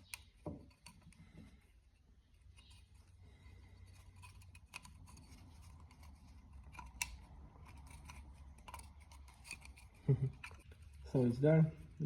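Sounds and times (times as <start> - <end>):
plastic and metal parts clicking: 3.8 - 11.1.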